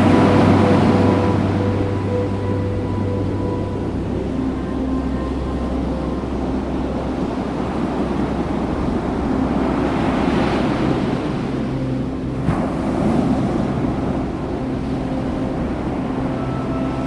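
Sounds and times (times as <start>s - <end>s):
ocean surf on beach: 0.0s - 2.9s, 5.8s - 17.0s
wind noise on microphone: 0.0s - 17.0s.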